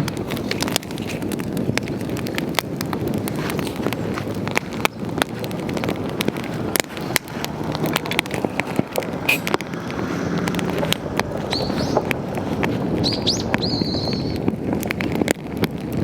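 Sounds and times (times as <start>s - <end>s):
campfire crackling and popping: 0.0s - 16.0s
low rush of flame: 0.0s - 16.0s.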